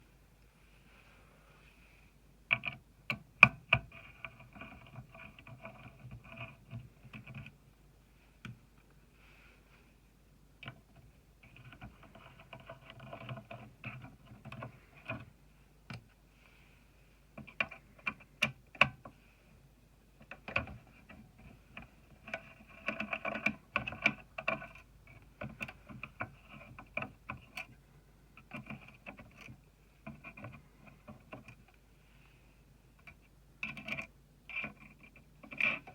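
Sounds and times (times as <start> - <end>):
clicks and taps of computer parts: 2.5 - 7.6, 17.4 - 19.1, 20.2 - 27.8.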